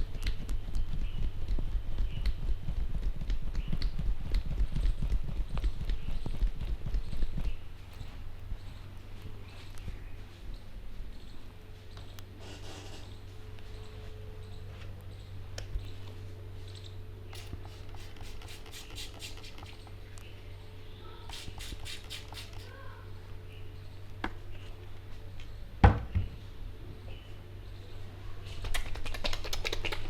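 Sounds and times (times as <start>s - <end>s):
small clicks and taps: 0.1s - 7.6s
hands rubbing head and hair: 17.4s - 20.0s, 21.3s - 22.7s, 28.5s - 30.0s.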